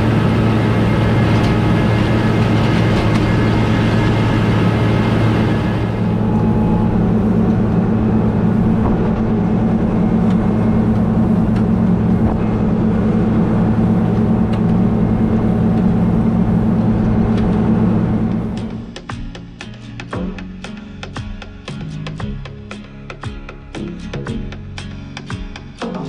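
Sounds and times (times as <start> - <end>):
combine harvester engine hum: 0.0 - 19.1.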